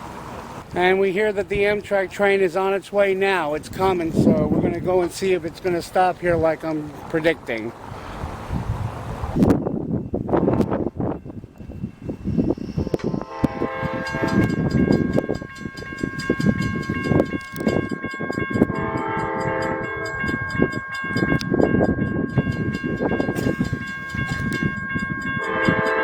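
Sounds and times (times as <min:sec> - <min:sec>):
low train rumble: 0:00.0 - 0:26.0
wind on microphone: 0:03.6 - 0:05.0, 0:07.8 - 0:26.0
crossing warning bell ringing: 0:08.8 - 0:26.0
train horn blasts: 0:12.9 - 0:17.7, 0:18.6 - 0:20.6, 0:25.4 - 0:26.0.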